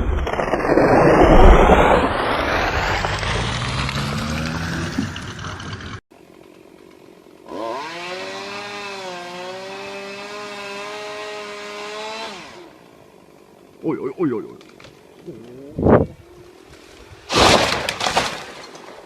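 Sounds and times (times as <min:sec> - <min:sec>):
chainsaw revving: 0:07.3 - 0:12.8.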